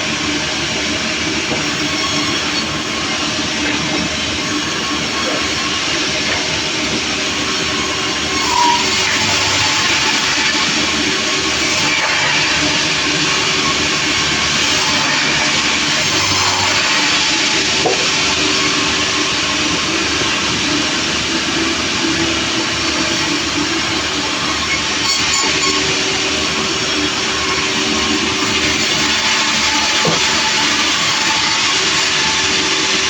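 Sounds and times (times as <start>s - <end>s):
sawmill saw cutting log: 0.0s - 33.0s.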